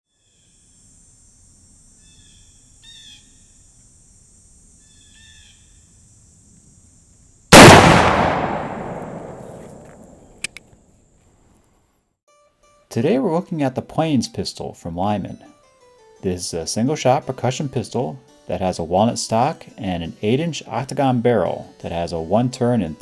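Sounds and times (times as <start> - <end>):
pistol shot echoing: 7.5 - 10.5.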